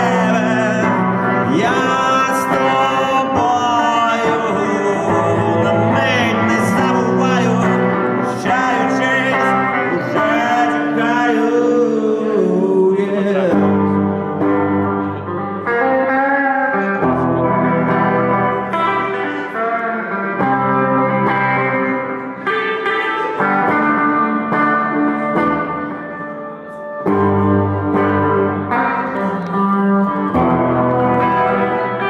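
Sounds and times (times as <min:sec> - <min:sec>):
guitar melody: 0:00.0 - 0:32.0
live band playing: 0:13.6 - 0:32.0.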